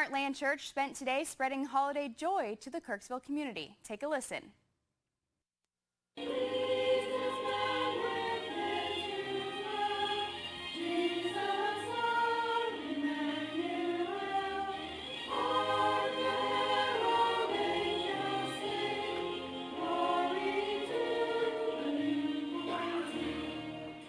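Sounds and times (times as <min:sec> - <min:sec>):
choir singing in harmony: 0:06.2 - 0:24.0.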